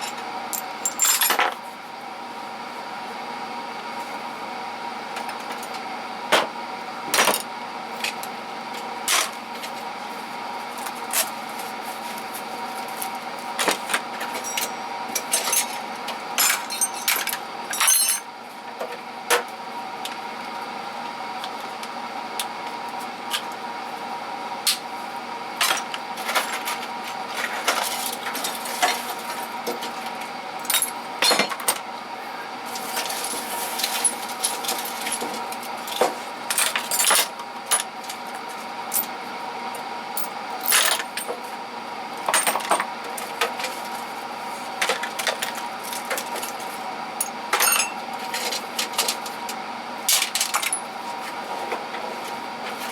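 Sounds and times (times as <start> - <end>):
steady background hum: 0.0 - 52.9
metal tools clinking: 0.8 - 1.5, 47.2 - 48.0.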